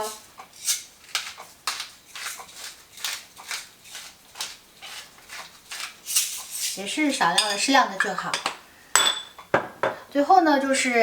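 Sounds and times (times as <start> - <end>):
pepper mill grinding: 0.0 - 7.8.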